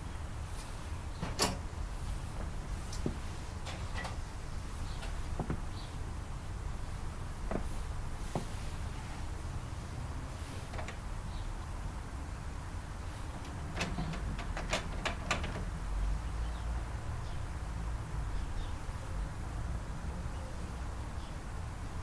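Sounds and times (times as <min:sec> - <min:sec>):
sharp clicks and knocks: 0:02.4 - 0:04.2, 0:05.0 - 0:05.7, 0:07.4 - 0:08.5, 0:10.7 - 0:11.1, 0:13.3 - 0:15.8.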